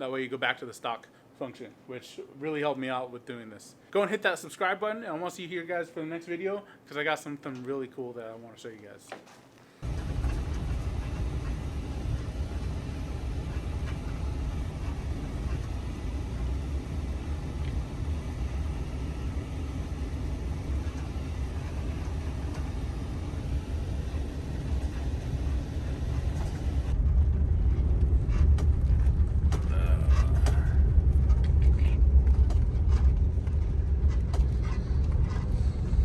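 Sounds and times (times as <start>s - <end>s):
van engine rumble: 9.8s - 36.0s.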